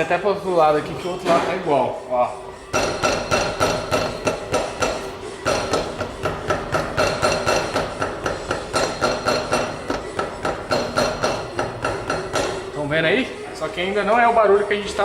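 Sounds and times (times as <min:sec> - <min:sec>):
rapid metallic knocking: 0:02.7 - 0:12.8.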